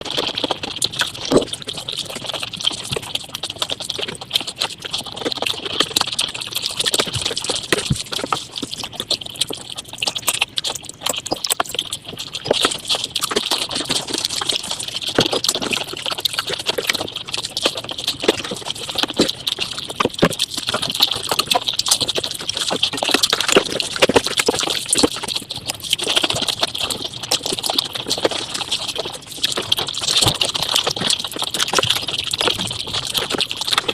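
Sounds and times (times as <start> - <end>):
chewing and crunching: 0.0 - 33.9.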